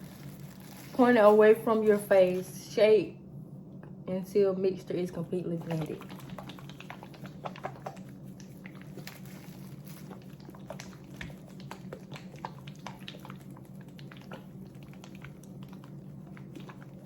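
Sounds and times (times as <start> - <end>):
plastic bottle being shaken: 0.0 - 2.5, 5.6 - 12.4
steady low hum: 0.0 - 17.0.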